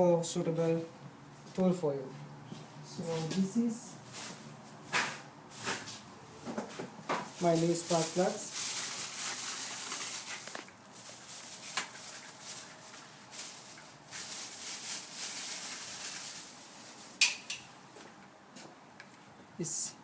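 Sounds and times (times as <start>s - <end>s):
packaging rustling: 7.3s - 17.2s.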